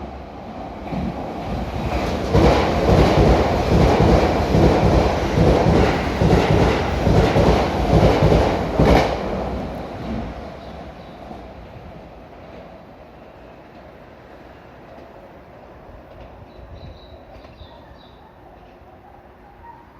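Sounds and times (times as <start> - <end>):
train wheels clacking over rail joints: 1.8 - 10.3.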